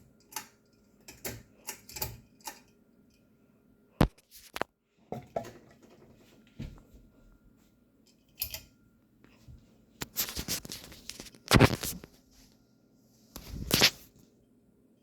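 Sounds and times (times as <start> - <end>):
objects scraping and rustling: 10.0 - 12.5, 13.4 - 14.2.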